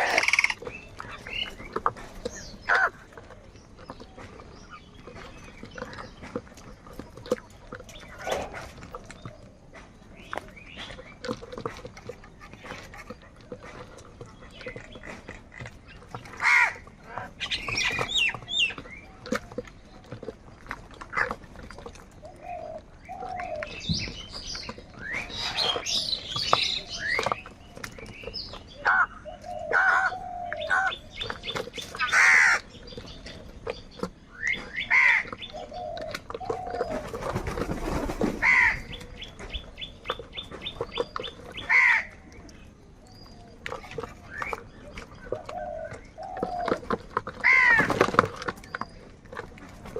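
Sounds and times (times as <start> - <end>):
small birds chirping: 0.0 - 49.9
crows cawing: 16.4 - 17.2, 28.8 - 30.9, 32.0 - 32.6, 34.9 - 35.3, 38.4 - 38.9, 41.7 - 42.2, 47.4 - 48.0.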